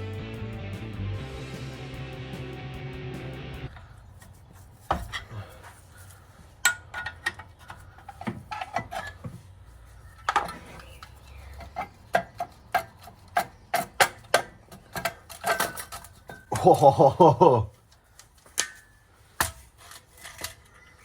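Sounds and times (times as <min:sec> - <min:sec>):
metallic clicks of hand tools: 0:10.2 - 0:16.7, 0:18.2 - 0:20.7.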